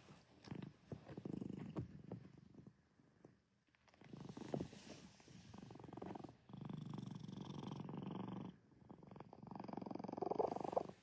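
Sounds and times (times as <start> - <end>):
cat purring: 0.0 - 11.0.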